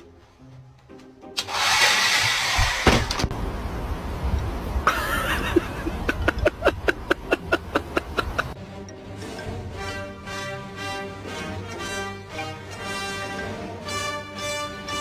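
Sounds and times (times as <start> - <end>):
hair dryer blowing: 1.4 - 3.2.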